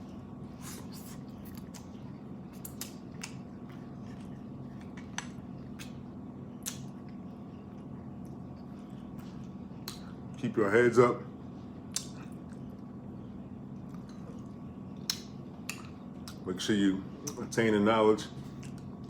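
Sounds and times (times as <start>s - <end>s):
steady low hum: 0.0s - 19.0s
eating clicks and snaps: 0.6s - 8.6s, 9.2s - 10.4s, 11.9s - 12.9s, 13.8s - 16.5s.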